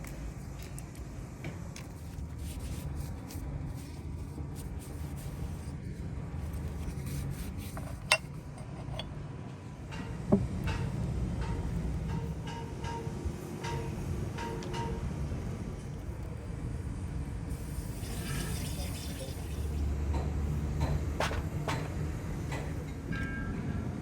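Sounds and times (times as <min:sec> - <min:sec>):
metal parts being rubbed: 0:06.8 - 0:09.1.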